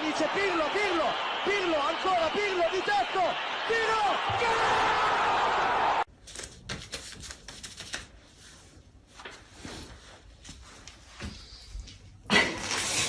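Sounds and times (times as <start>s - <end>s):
loud crowd noise: 0.0s - 6.1s.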